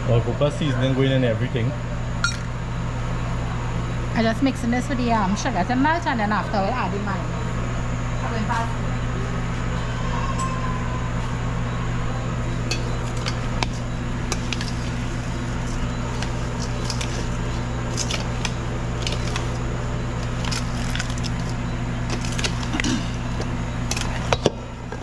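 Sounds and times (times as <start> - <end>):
low hum of kitchen range: 0.0 - 25.0
utensil clinking against a bowl: 12.7 - 17.3.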